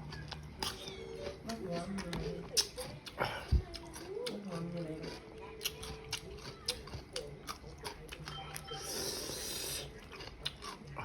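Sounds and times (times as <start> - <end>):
faint background voices or music: 0.0 - 11.0
chewing food wet clicks: 0.1 - 8.7.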